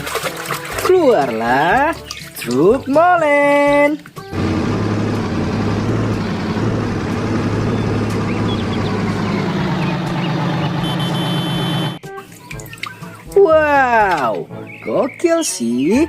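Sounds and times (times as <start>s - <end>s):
diesel engine running: 4.3s - 12.0s
high steady tone: 10.6s - 12.0s.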